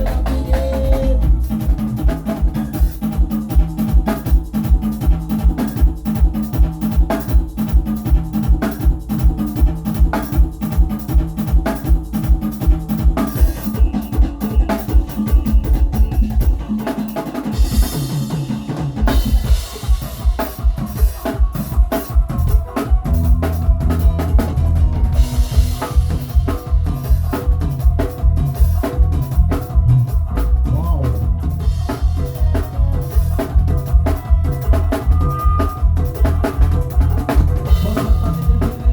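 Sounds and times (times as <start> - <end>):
sustained bass line: 0.0 - 2.6, 22.3 - 38.9
drum kit groove: 0.0 - 38.9.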